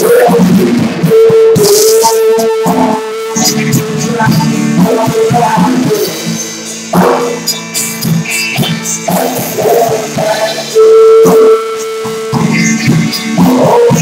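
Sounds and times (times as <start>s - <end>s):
drum kit playing: 0.0s - 14.0s
electric guitar playing: 0.0s - 14.0s
hard drum hit: 6.9s - 8.3s.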